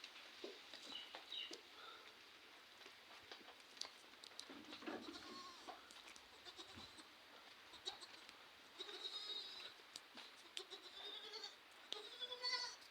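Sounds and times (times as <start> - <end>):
goats bleating faintly: 4.9 - 5.8.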